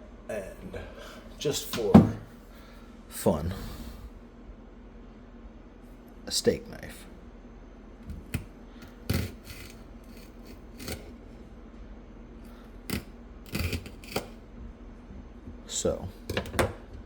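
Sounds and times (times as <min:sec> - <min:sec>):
knife chopping celery on board: 0:09.1 - 0:11.1.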